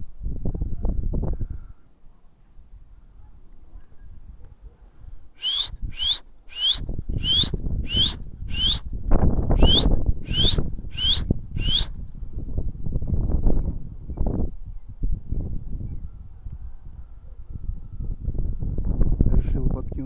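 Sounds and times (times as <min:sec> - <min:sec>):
wind buffeting microphone: 0:00.0 - 0:01.8, 0:05.0 - 0:20.0
person whistling short rising whistles: 0:05.4 - 0:08.8, 0:09.6 - 0:12.0.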